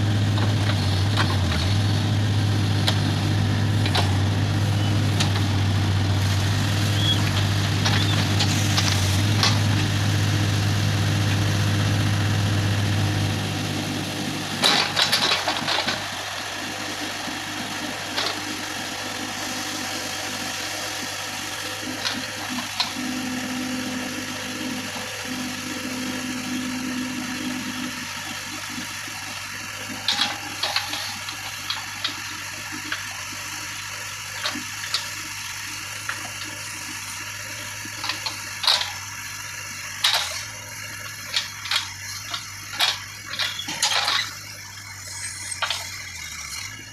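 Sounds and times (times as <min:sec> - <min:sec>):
diesel engine running: 0:00.0 - 0:46.9
sharp clicks and knocks: 0:40.0 - 0:40.5, 0:41.3 - 0:44.3.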